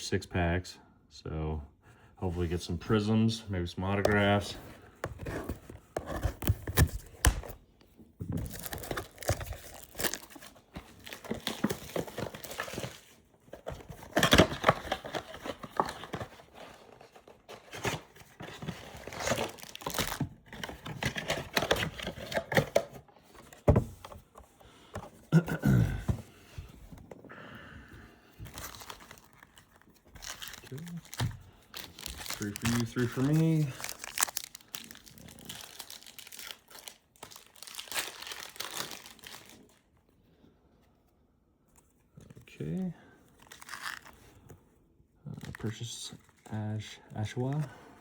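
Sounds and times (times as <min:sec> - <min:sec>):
cardboard clicks and knocks: 0:05.0 - 0:07.6, 0:17.7 - 0:25.2
plastic wrapping crinkling and tearing: 0:08.4 - 0:13.3, 0:14.0 - 0:22.6, 0:28.5 - 0:39.9, 0:43.4 - 0:44.4.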